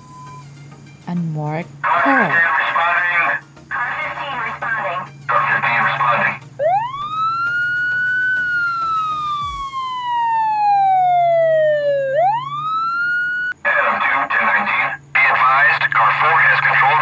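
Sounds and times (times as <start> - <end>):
police siren wailing: 1.8 - 13.7.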